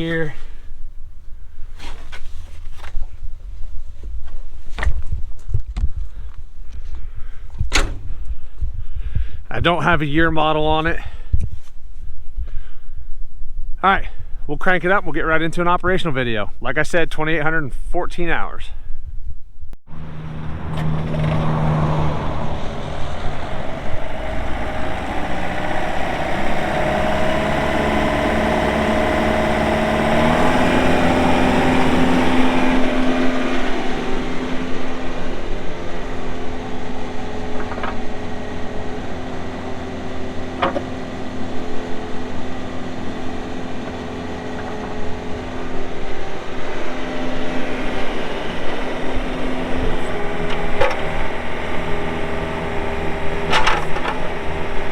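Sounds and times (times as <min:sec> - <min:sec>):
excavator diesel engine running: 0:19.9 - 0:54.9
sharp knocks: 0:40.6 - 0:41.0.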